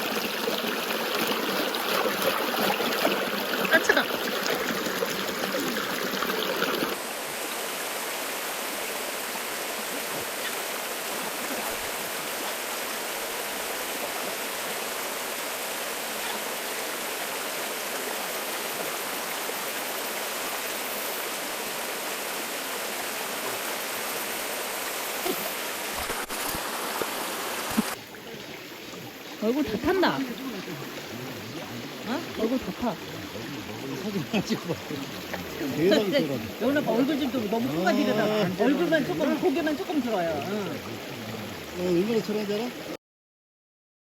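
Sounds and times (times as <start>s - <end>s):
stream water rushing: 0.0s - 43.0s.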